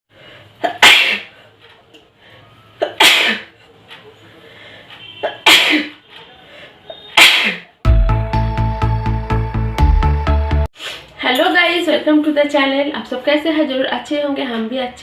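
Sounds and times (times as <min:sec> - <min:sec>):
person sneezing: 0:00.6 - 0:01.4, 0:02.8 - 0:03.6, 0:05.3 - 0:06.0, 0:07.0 - 0:07.8
loud music with heavy beat: 0:07.9 - 0:10.6.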